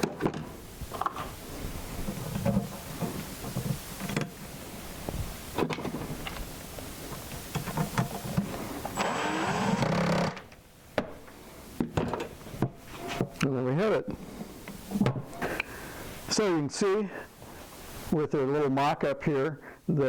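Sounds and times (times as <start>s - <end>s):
handling clicks and knocks: 7.1s - 9.0s
power drill whining: 8.8s - 10.5s.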